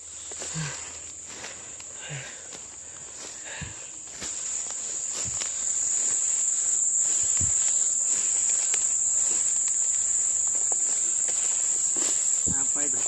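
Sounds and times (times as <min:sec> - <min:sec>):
insects droning: 0:00.0 - 0:13.0
soft low thumps: 0:07.1 - 0:07.9.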